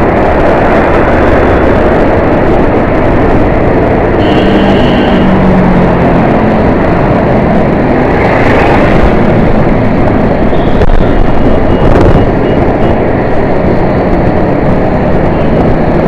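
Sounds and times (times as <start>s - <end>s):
dense road traffic: 0.0s - 16.0s
high-pitched horn beeps: 4.2s - 5.4s, 10.5s - 12.9s.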